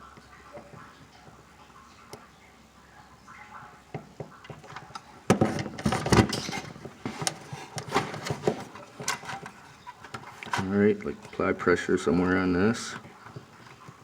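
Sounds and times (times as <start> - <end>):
clicks knocks and rattling: 3.9 - 11.4.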